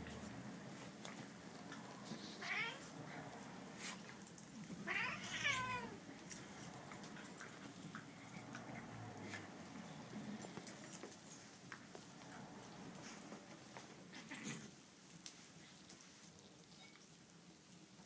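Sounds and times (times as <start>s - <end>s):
cat meowing: 2.4s - 2.9s, 4.8s - 6.0s.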